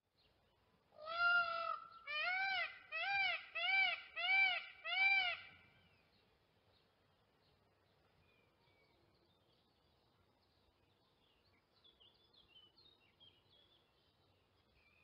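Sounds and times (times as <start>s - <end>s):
peafowl calling: 1.0s - 5.6s.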